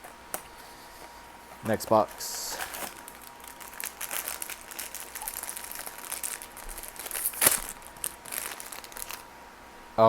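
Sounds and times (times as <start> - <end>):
wrapping crinkling: 1.5 - 9.3.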